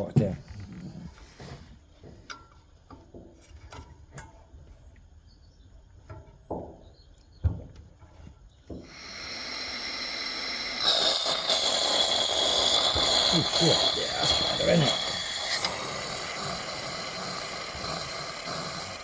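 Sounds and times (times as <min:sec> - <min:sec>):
stove burner flame hissing: 0:08.8 - 0:19.0.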